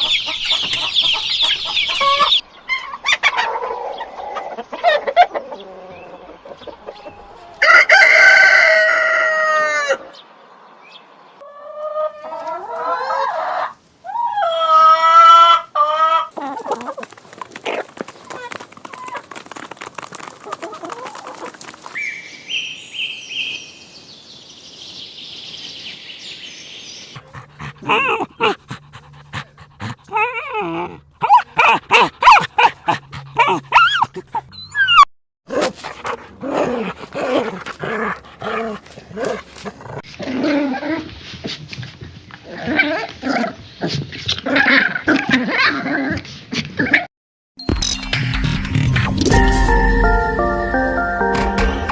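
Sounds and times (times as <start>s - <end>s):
dogs barking and yelping: 0.0s - 5.8s, 27.1s - 41.6s, 42.4s - 47.1s.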